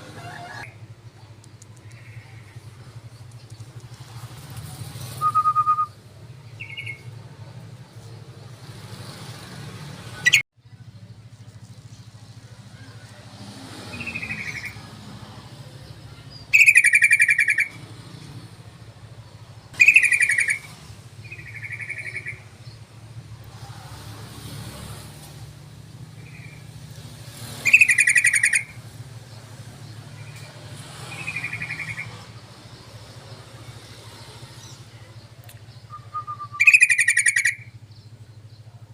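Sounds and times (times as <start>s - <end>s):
bird singing short phrases: 19.8s - 22.4s, 35.6s - 38.1s.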